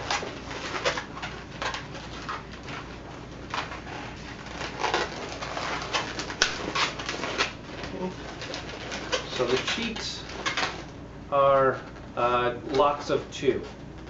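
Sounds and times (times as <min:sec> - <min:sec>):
balloons rubbing and squeaking: 0:00.0 - 0:11.0.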